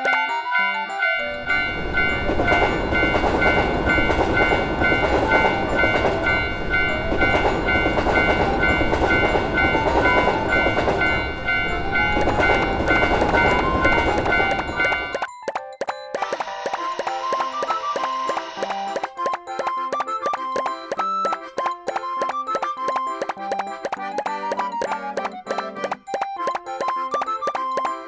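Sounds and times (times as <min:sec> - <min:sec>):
sustained high tones: 0:00.0 - 0:15.3, 0:16.2 - 0:20.0
train wheels rumbling on rails: 0:01.4 - 0:15.3.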